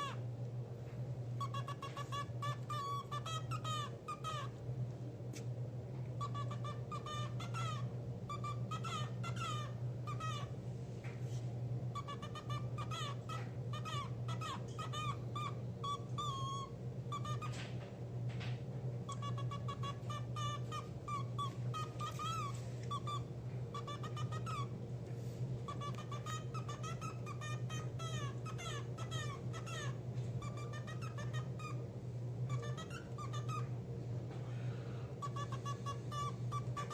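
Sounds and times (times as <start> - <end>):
cockatiel chirping: 0.0 - 0.2, 1.4 - 4.6, 6.2 - 10.6, 11.3 - 17.7, 19.1 - 24.7, 25.7 - 31.9, 32.5 - 33.7, 35.2 - 36.9
steady low hum: 0.0 - 36.9.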